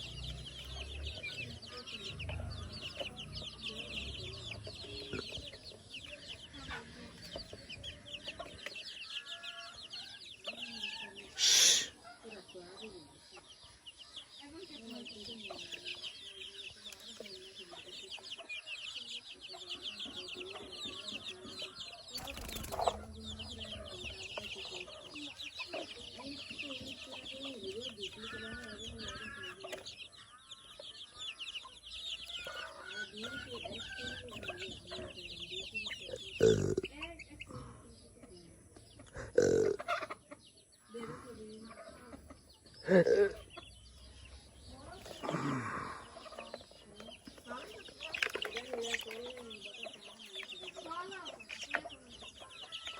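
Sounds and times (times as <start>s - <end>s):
chicks peeping: 0.0s - 52.9s
low clucking calls: 32.4s - 37.8s, 38.7s - 41.4s.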